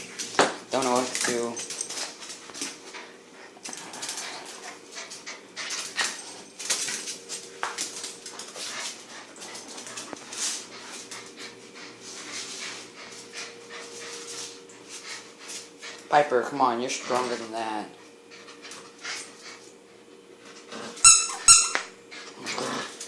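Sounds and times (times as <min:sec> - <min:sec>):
dog scuffling with a toy: 0:00.0 - 0:16.2.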